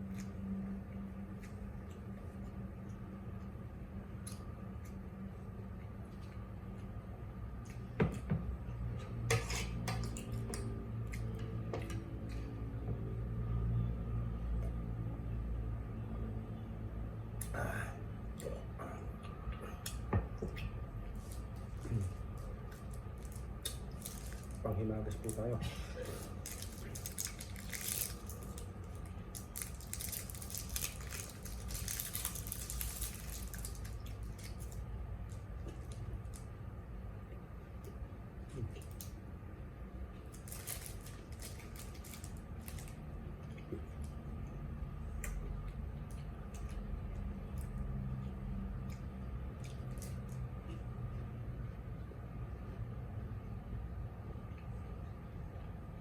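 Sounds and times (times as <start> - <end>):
steady low hum: 0.0 - 56.0.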